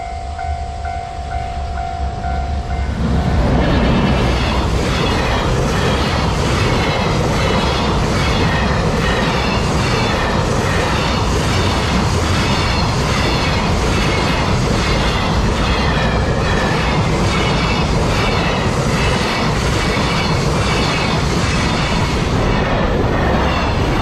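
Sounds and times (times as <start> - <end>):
level crossing bell ringing: 0.0 - 3.0
train wheels on rails: 0.0 - 24.0.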